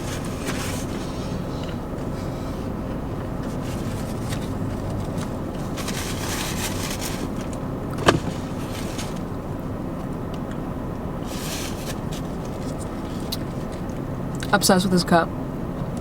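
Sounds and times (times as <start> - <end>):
soft rustling: 0.0 - 9.4, 11.2 - 13.6
low rumble with faint hum: 0.0 - 16.0.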